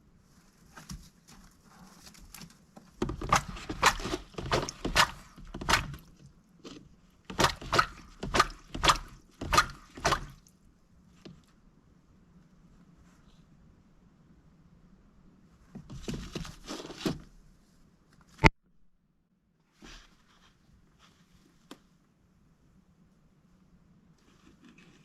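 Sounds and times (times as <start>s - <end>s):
duck splashing in water: 3.0s - 6.3s, 7.3s - 10.5s.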